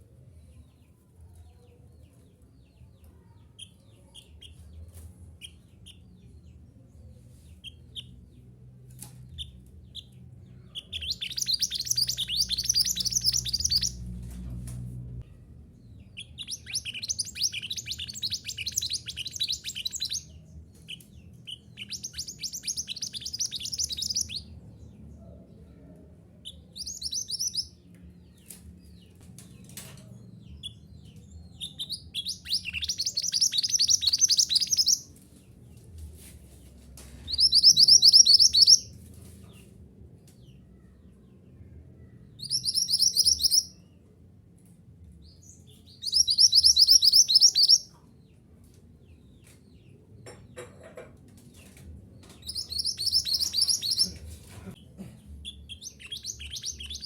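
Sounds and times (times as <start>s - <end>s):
bird chattering song: 9.3s - 14.1s, 15.9s - 24.5s, 26.4s - 27.7s, 30.5s - 35.1s, 37.3s - 38.9s, 42.4s - 43.8s, 45.8s - 48.0s, 52.3s - 54.3s, 55.4s - 57.0s
high bird chirps: 9.4s - 14.2s, 15.9s - 24.5s, 26.4s - 27.7s, 31.6s - 35.1s, 37.3s - 38.9s, 42.3s - 43.8s, 45.4s - 48.0s, 52.3s - 54.2s, 55.4s - 57.0s.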